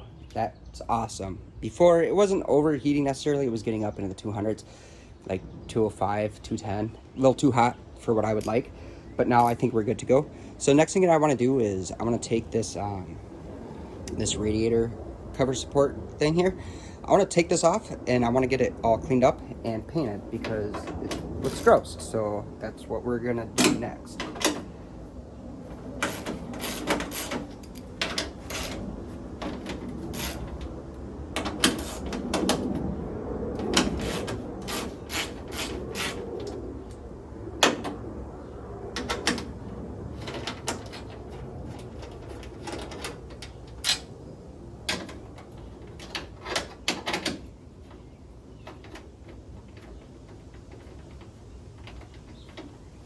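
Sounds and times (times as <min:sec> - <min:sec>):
hand tools clicking and knocking: 0:23.5 - 0:24.7, 0:26.0 - 0:30.7, 0:31.4 - 0:32.7, 0:33.6 - 0:36.6.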